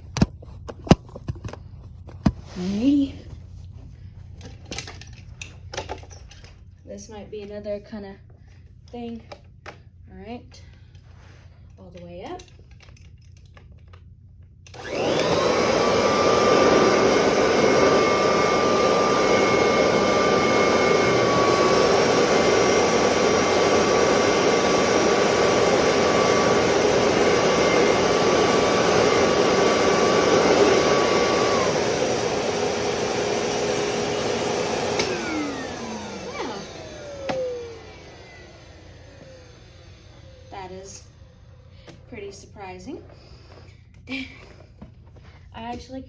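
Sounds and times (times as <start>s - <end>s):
upright vacuum cleaner running: 14.6s - 44.9s.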